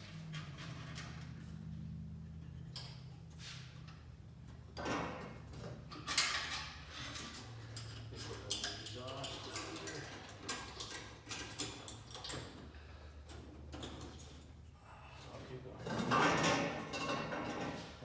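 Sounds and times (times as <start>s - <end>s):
metal clinks and knocks: 4.8s - 14.6s, 15.8s - 18.0s.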